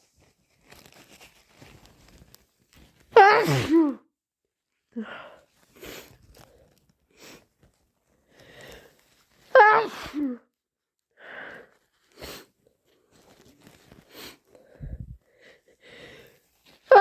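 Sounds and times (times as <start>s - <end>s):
person sneezing: 3.2s - 4.0s, 9.5s - 10.4s
person sniffing and breathing: 5.0s - 7.6s, 8.2s - 9.2s, 11.2s - 12.6s, 13.9s - 16.9s.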